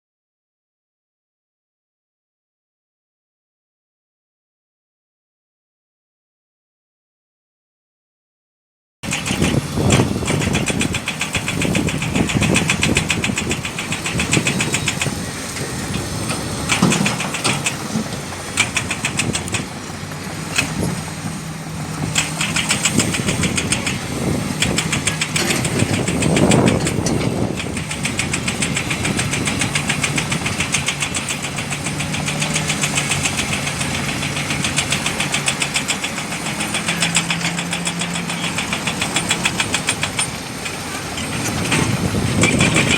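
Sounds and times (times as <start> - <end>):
heavy diesel engines clattering: 9.0 - 42.9.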